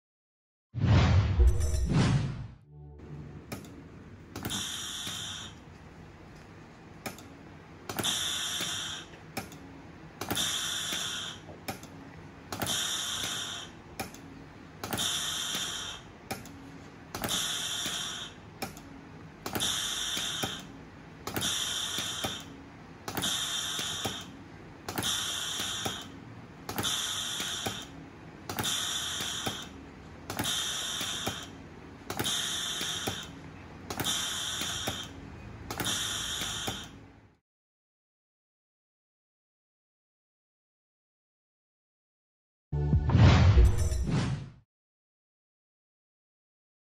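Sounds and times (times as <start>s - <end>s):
ventilator mechanism whirring: 3.0s - 37.4s
ventilator clicks: 3.5s - 37.0s.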